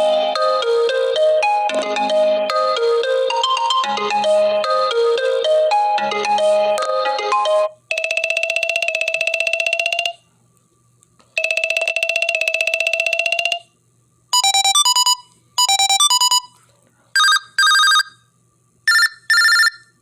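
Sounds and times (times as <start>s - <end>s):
melodic ringtone: 0.0s - 10.2s, 11.4s - 13.6s, 14.4s - 16.5s, 17.2s - 18.2s, 18.9s - 19.8s
two-pitch beeping ringtone: 7.3s - 10.2s, 11.4s - 13.6s, 14.4s - 16.5s, 17.2s - 18.2s, 18.9s - 19.9s.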